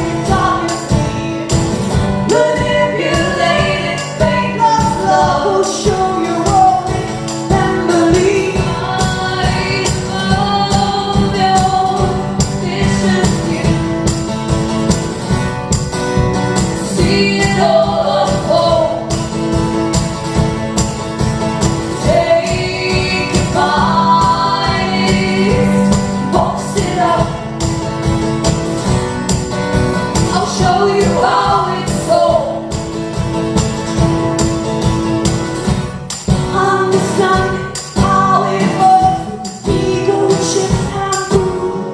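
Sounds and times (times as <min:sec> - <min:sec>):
person singing: 0:00.0 - 0:14.2, 0:16.8 - 0:19.2, 0:21.9 - 0:27.5, 0:30.1 - 0:32.8, 0:36.3 - 0:41.9
live band music: 0:00.0 - 0:41.9
tambourine beat: 0:00.0 - 0:41.9.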